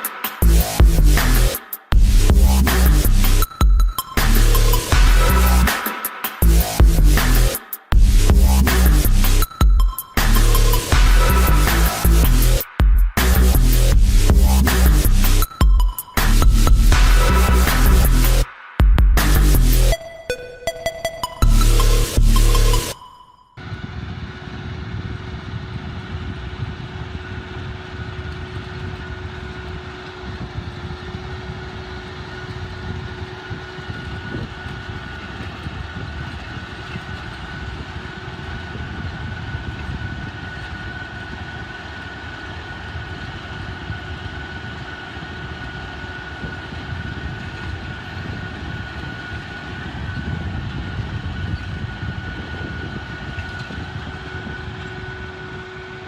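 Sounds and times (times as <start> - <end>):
rumbling machinery din: 0.0 - 5.8, 6.4 - 20.0
high machinery whine: 0.0 - 56.0.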